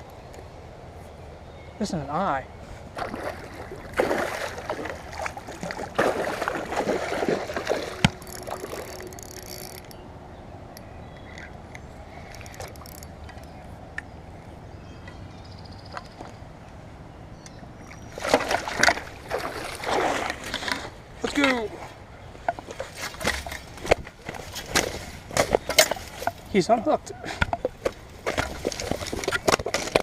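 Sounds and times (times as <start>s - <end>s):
creek water rushing: 2.9s - 9.2s
water splashing: 2.9s - 9.9s, 18.1s - 21.4s.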